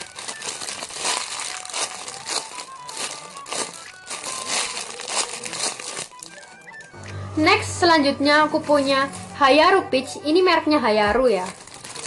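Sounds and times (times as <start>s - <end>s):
plastic packaging crinkling: 0.0s - 6.9s, 11.0s - 12.0s
light background music: 0.0s - 12.0s.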